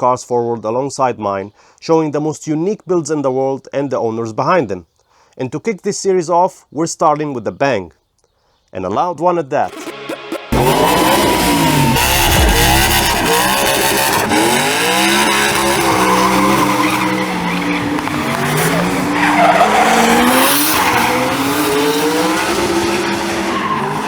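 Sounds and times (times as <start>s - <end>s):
car engine revving: 9.7s - 24.0s
tyres squealing: 10.6s - 24.0s.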